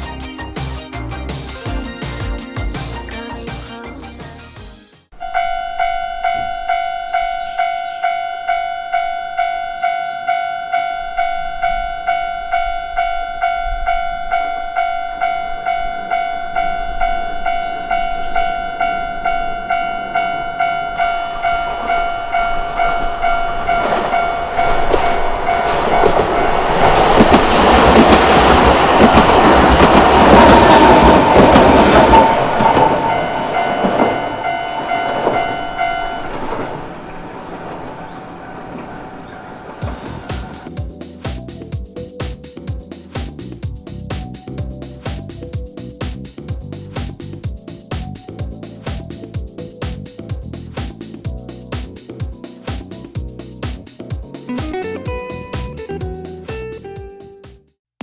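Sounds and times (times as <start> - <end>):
level-crossing warning bell ringing: 5.2 - 37.4
electric train rumbling past: 5.2 - 57.0.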